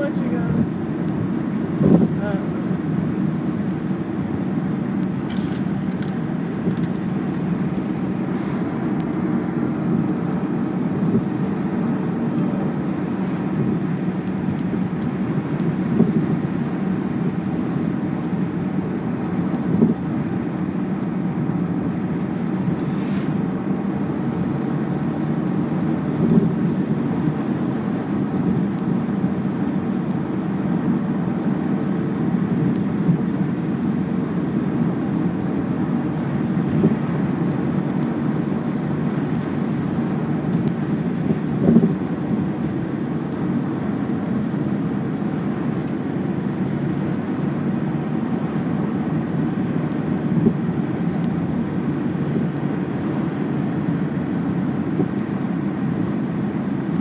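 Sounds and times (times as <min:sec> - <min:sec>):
vehicle engine rumble: 0:00.0 - 0:57.0.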